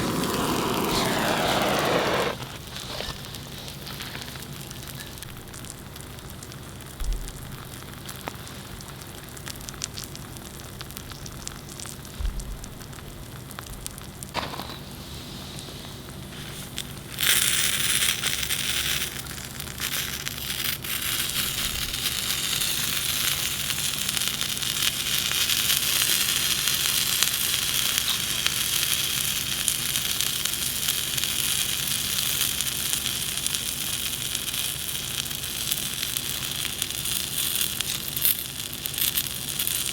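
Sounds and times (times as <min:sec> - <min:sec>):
fire crackling and popping: 0:00.0 - 0:39.9
food sizzling in a hot pan: 0:14.4 - 0:39.9.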